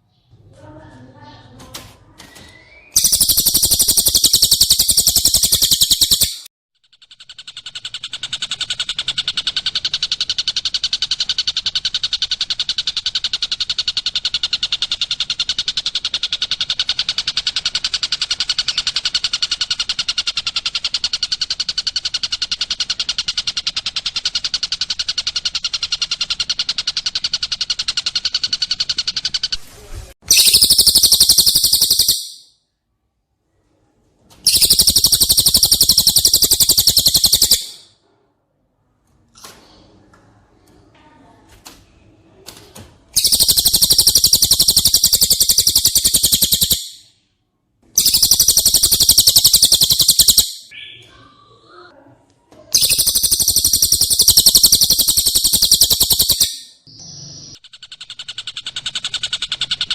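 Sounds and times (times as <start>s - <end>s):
high shrill insect trill: 3.0s - 6.5s, 30.3s - 32.4s, 34.5s - 37.7s, 43.2s - 46.9s, 48.0s - 50.6s, 52.8s - 56.7s
long fast even trill: 3.0s - 6.5s, 30.3s - 32.4s, 48.0s - 50.7s.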